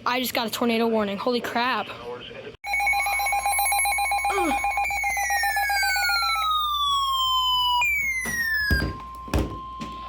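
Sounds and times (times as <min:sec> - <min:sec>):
pulsing two-tone alert: 0:02.6 - 0:10.0.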